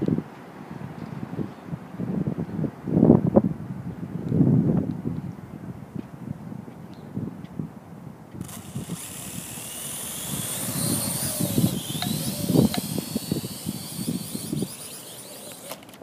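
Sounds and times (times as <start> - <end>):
wind buffeting microphone: 0.0 - 15.7
drone propellers whining: 8.4 - 16.0.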